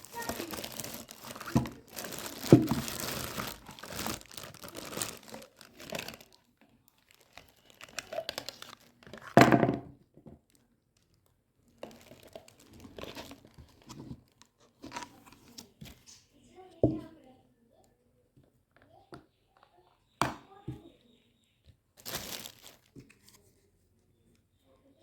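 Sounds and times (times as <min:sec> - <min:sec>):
packaging crinkling and tearing: 0:00.0 - 0:09.4, 0:10.5 - 0:14.1, 0:22.0 - 0:23.1.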